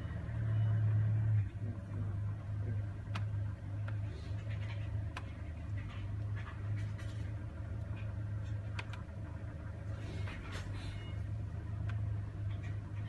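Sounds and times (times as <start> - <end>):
car engine idling: 0.0 - 13.0
light ticks and faint squeaks: 2.6 - 9.0, 9.8 - 13.0.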